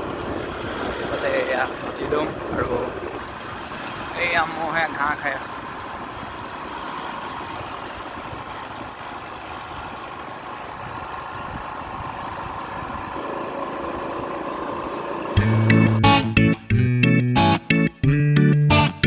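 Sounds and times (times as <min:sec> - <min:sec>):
wind buffeting microphone: 0:00.0 - 0:15.0
scooter engine running: 0:00.0 - 0:16.2.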